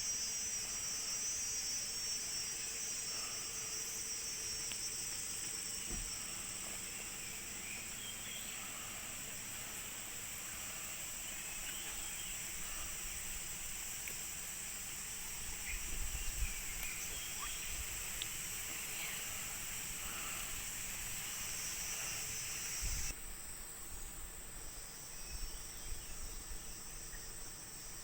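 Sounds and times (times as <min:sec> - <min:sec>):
insects droning: 0:00.0 - 0:28.0
faint bird chirps: 0:15.2 - 0:20.6.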